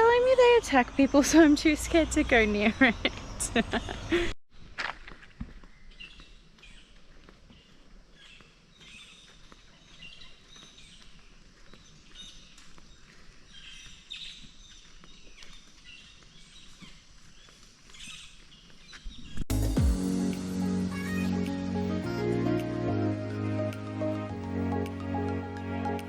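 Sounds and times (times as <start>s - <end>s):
small birds chirping: 0.0s - 4.2s, 5.5s - 19.4s.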